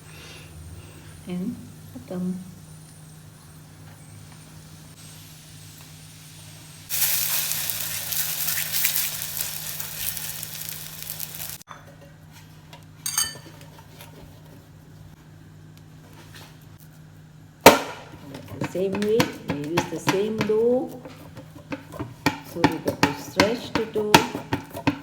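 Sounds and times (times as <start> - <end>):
pastry sizzling in a pan: 1.4 - 11.7.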